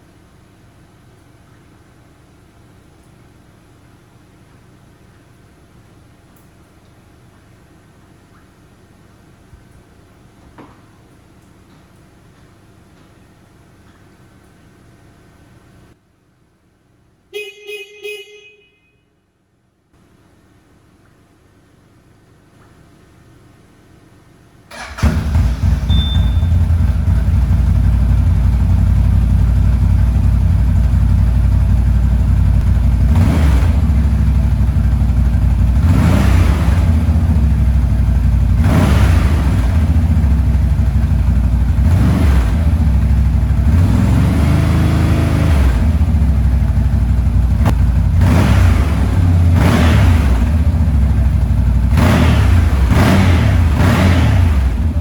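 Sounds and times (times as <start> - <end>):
atv engine idling: 24.7 - 55.0
engine revving: 32.6 - 40.6, 41.7 - 46.5, 47.5 - 55.0.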